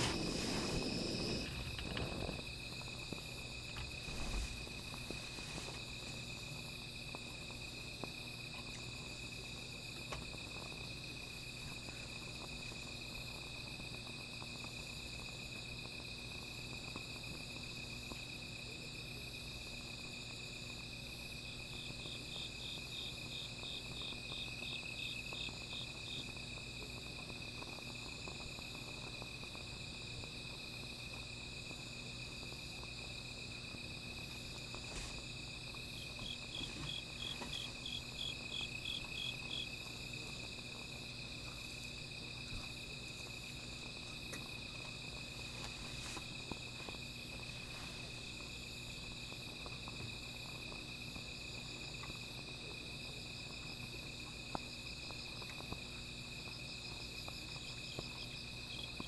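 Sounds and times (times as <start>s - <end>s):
insect chirping in pulses: 0.0s - 9.7s, 31.4s - 49.7s
crickets trilling: 0.0s - 59.0s
faint crackles of small fire: 0.0s - 59.0s.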